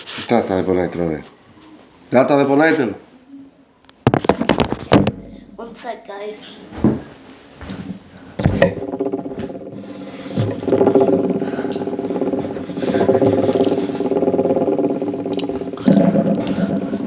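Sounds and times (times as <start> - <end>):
fidget spinner whirring: 0.0 - 6.6, 7.4 - 17.0.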